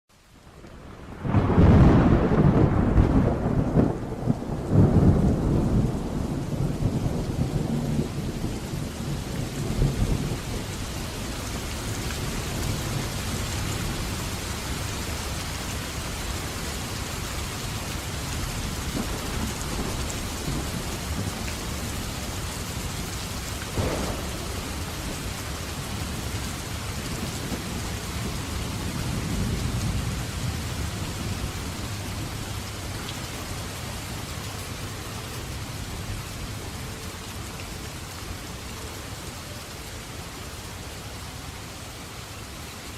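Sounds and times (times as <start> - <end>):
heavy rain: 0.1 - 42.9
thunder rumbling: 0.8 - 32.8
thunder clap: 1.2 - 8.0, 23.7 - 31.4.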